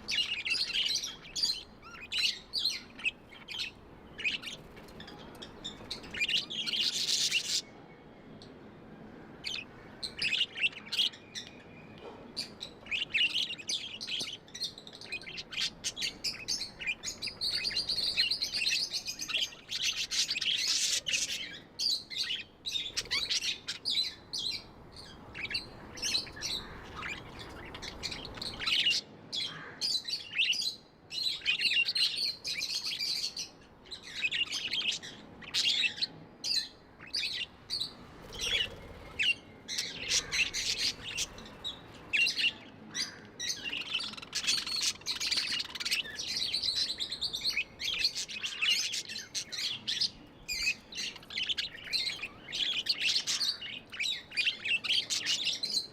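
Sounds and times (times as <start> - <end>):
budgerigars chattering and chirping: 0.0 - 7.6, 12.4 - 30.6, 31.4 - 55.9.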